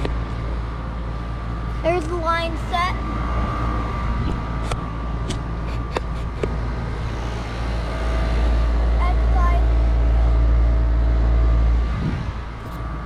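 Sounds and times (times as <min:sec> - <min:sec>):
hvac unit humming: 0:00.0 - 0:13.0.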